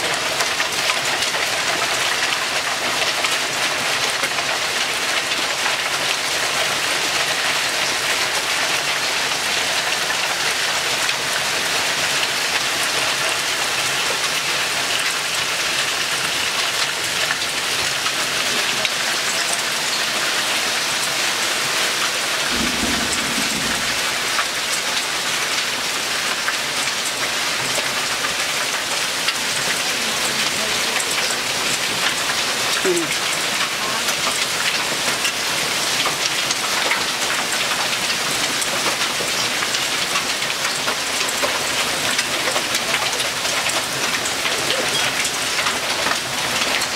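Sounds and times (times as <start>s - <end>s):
hail and rain pelting down: 0.0s - 46.9s
hailstones ticking: 0.0s - 46.9s
low rumble of thunder: 22.4s - 24.6s.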